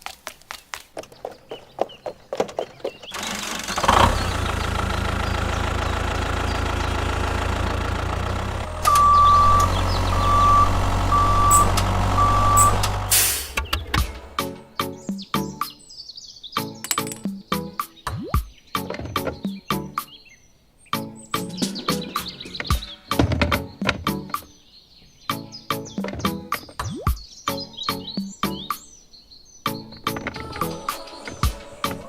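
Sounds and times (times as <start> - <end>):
truck engine idling: 3.2 - 14.6
reversing alarm beeps: 8.8 - 13.5.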